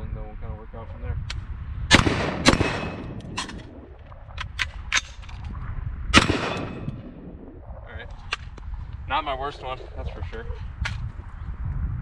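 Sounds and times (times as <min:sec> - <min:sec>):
rifle shots: 0:01.9 - 0:03.7, 0:06.2 - 0:07.3.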